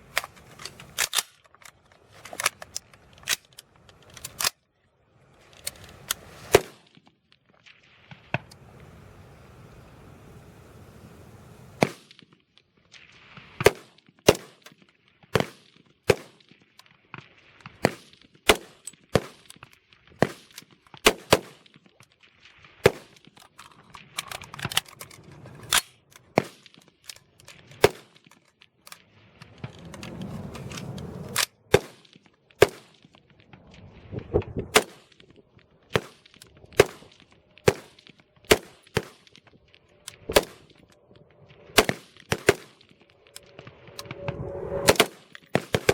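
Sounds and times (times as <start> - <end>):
rifle shots: 6.4 - 7.0, 11.8 - 12.2, 13.6 - 14.6, 15.4 - 16.5, 17.7 - 19.6, 20.2 - 21.8, 22.8 - 28.4, 31.3 - 33.1, 34.7 - 35.3, 35.9 - 39.4, 40.1 - 40.9, 41.8 - 43.5, 44.8 - 45.9
low rumbling noise: 8.4 - 11.8, 24.2 - 26.2, 29.1 - 31.7, 39.6 - 45.1.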